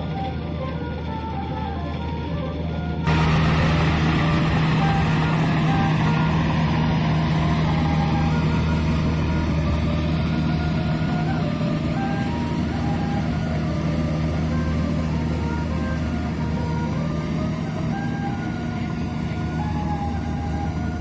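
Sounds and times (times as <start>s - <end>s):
diesel engine drone: 0.1s - 21.0s
mechanical rush: 3.1s - 13.1s.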